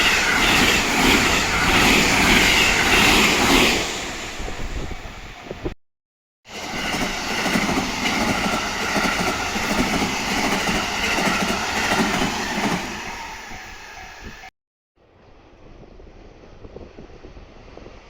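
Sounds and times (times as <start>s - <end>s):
train passing at speed: 0.0s - 5.8s, 6.5s - 18.0s.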